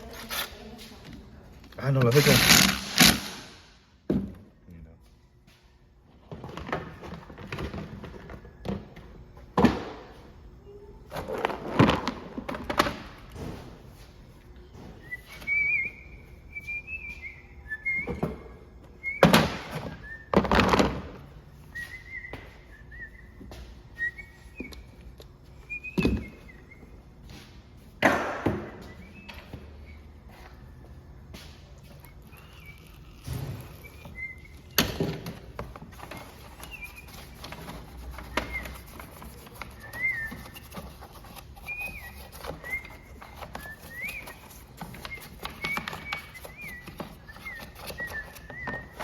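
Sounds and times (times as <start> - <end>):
thin wavering whistle: 15.0 - 20.4, 21.6 - 27.0, 32.0 - 35.0, 36.0 - 41.0, 41.6 - 49.0.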